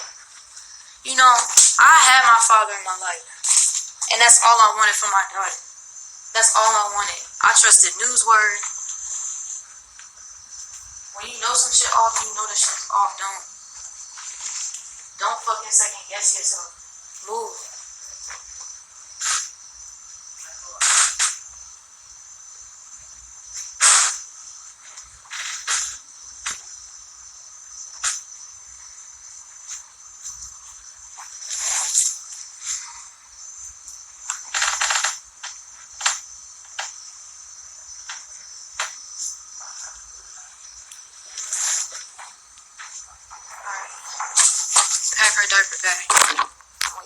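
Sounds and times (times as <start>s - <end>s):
crickets trilling: 0.0s - 47.0s
insects chirring: 0.0s - 47.0s
short rustle: 13.7s - 15.1s, 40.8s - 47.0s
sharp clicks: 34.2s - 37.0s, 44.4s - 47.0s.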